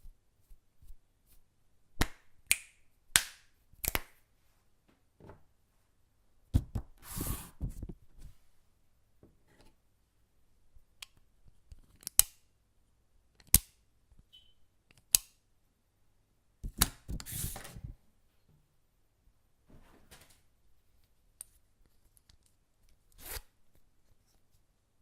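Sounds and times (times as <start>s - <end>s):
sharp snaps and clicks: 2.0s - 4.1s, 11.0s - 12.4s, 13.4s - 13.8s, 14.9s - 15.4s.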